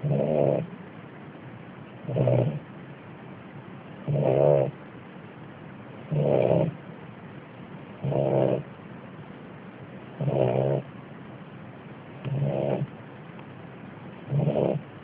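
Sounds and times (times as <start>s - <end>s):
pet snoring: 0.0s - 0.7s, 2.0s - 2.6s, 4.0s - 4.8s, 6.1s - 6.8s, 8.0s - 8.7s, 10.2s - 10.9s, 12.2s - 13.0s, 14.2s - 15.0s.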